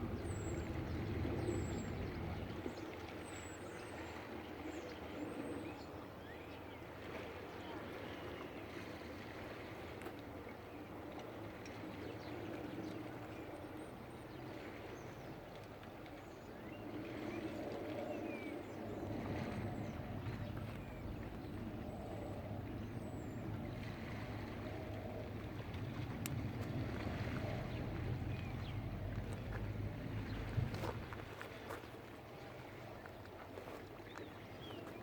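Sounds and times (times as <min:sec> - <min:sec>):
wind: 0:00.0 - 0:35.0
water washing: 0:22.6 - 0:32.1.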